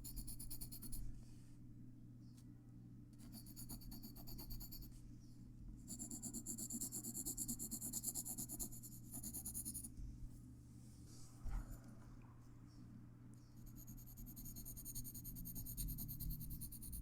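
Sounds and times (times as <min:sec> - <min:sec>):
pencil shading on paper: 0:03.2 - 0:04.8, 0:05.9 - 0:09.9, 0:13.7 - 0:17.0.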